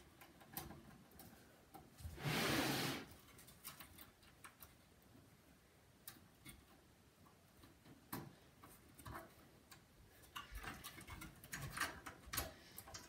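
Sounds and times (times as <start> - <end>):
cables and plastic connectors rattling: 0.0 - 2.0, 3.2 - 5.1, 6.0 - 13.0.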